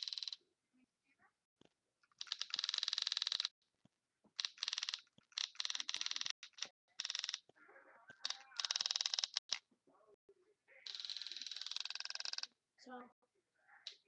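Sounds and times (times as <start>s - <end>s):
paintball marker rapid clicks: 2.0s - 3.5s, 4.4s - 7.5s, 8.2s - 9.6s, 10.9s - 12.5s.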